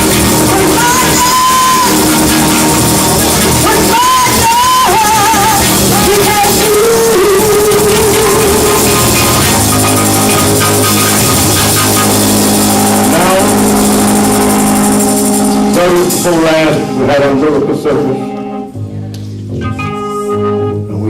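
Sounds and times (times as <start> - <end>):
people singing: 0.0 - 14.9
live praise band music: 0.0 - 21.0.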